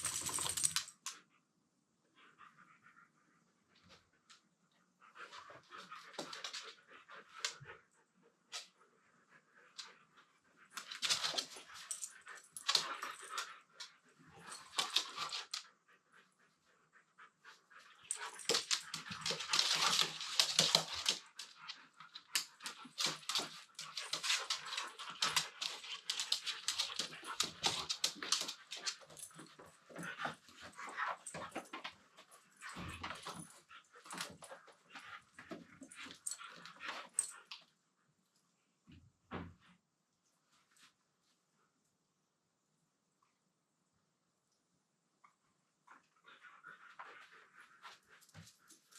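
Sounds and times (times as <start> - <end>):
dogs scuffling: 10.8 - 13.5, 14.4 - 15.6, 18.1 - 32.0.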